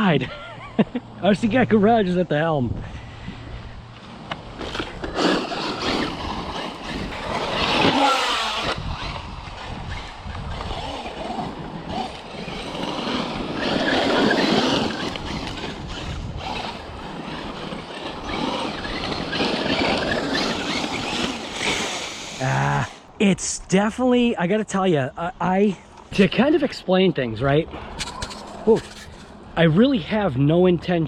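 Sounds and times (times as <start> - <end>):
tyres churning dirt: 3.9 - 23.1
electric motor whining: 4.6 - 23.0.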